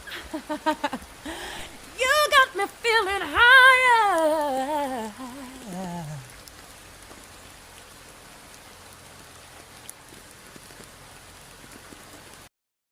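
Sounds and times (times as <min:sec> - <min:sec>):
steady rain: 0:00.0 - 0:12.5
woman singing a cappella: 0:01.9 - 0:06.3.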